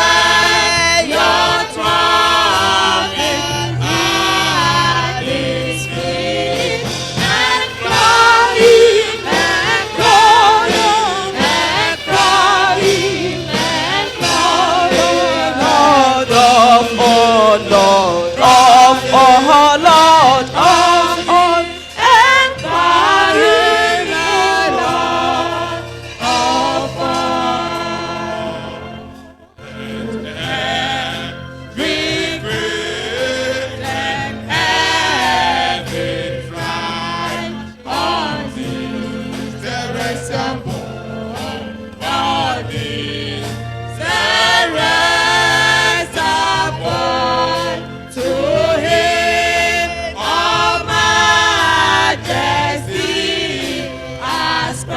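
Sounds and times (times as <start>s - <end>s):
congregation singing a hymn: 0.0s - 54.9s.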